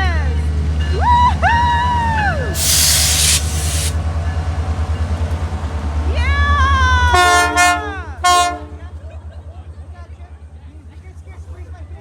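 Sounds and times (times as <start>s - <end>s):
diesel locomotive rumble: 0.0s - 12.0s
air hiss: 2.6s - 4.0s
locomotive air horn chord: 7.1s - 8.9s.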